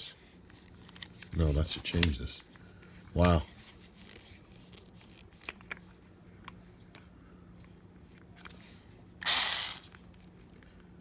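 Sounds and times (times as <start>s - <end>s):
cordless screwdriver running: 9.2s - 10.0s.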